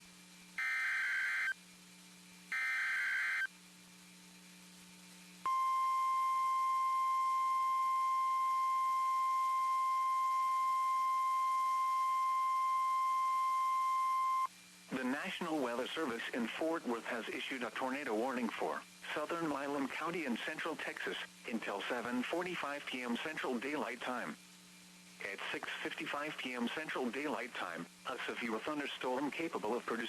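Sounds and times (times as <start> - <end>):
steady single-pitch alarm tone: 0.6 - 1.6, 2.5 - 3.5, 5.5 - 14.5.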